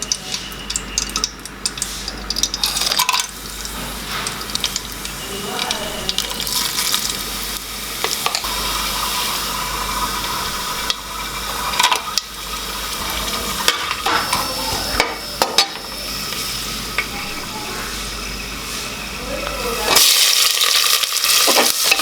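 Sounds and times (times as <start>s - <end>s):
food sizzling in hot oil: 0.0s - 22.0s.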